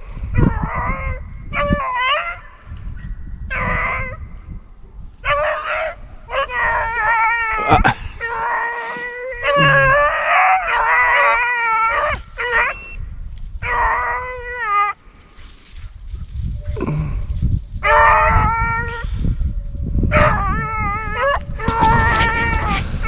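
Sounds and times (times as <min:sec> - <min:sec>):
hounds baying: 0:05.2 - 0:13.0, 0:17.8 - 0:19.2, 0:20.1 - 0:22.8.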